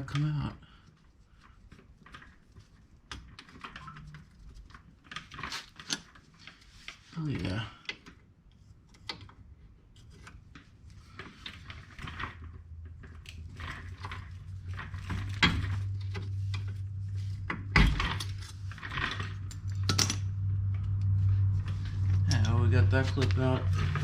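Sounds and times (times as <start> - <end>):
steady low hum: 6.4 - 24.0.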